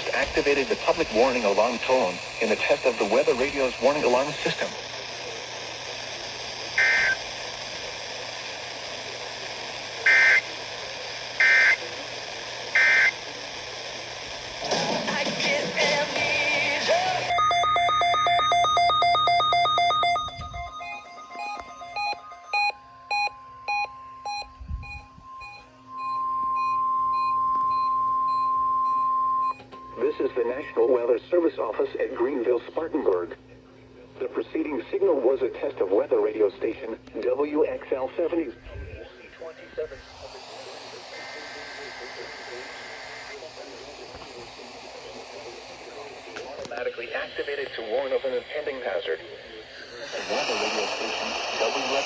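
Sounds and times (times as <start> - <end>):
radio alert beeping: 0.0 - 4.6, 6.8 - 7.2, 10.1 - 10.5, 15.9 - 31.0
radio reception hiss: 0.0 - 22.8, 23.6 - 52.0
two-tone data bursts: 6.8 - 7.3, 10.1 - 10.5, 11.4 - 11.9, 12.8 - 13.3, 16.0 - 31.0.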